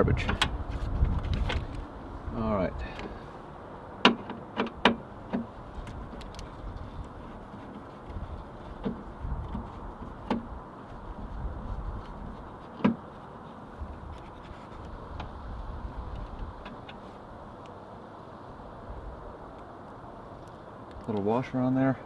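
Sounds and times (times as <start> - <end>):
low background rumble: 0.0 - 17.6.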